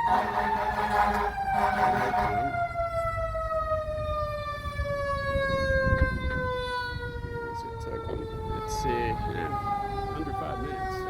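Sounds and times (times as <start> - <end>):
truck rumble: 0.0 - 4.9
fire engine siren winding down: 0.0 - 11.0.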